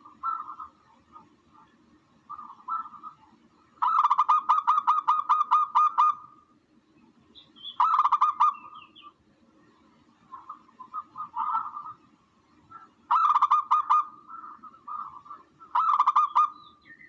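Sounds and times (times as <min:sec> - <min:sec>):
dove call repeated notes: 0:00.0 - 0:06.5, 0:07.4 - 0:09.2, 0:10.2 - 0:17.0.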